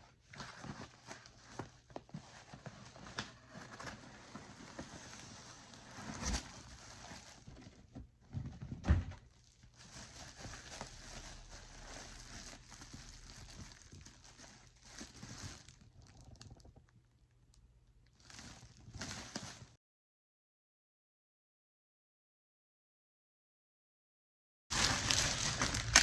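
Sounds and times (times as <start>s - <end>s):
packaging rustling: 9.3s - 16.8s, 24.7s - 26.0s.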